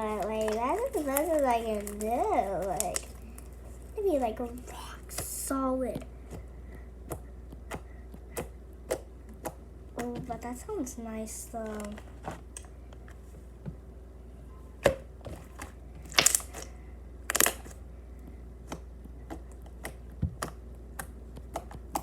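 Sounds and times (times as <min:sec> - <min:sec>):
slime squelching by hand: 0:00.0 - 0:12.6, 0:15.4 - 0:17.8.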